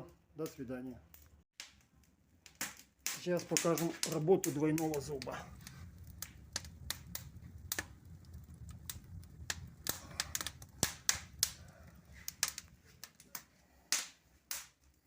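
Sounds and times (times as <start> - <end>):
wood fire crackling: 0.0 - 15.0
low steady hum: 4.3 - 13.8.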